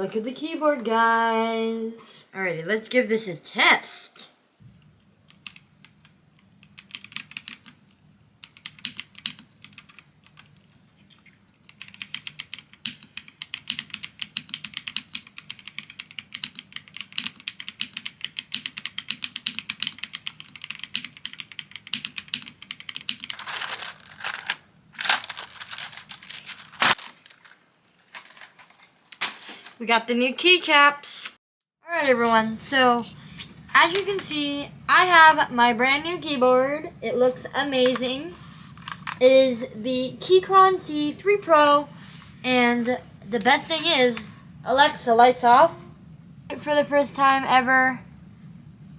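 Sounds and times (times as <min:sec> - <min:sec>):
typing on computer keyboard: 0:05.3 - 0:07.8, 0:08.4 - 0:10.6, 0:11.6 - 0:23.4.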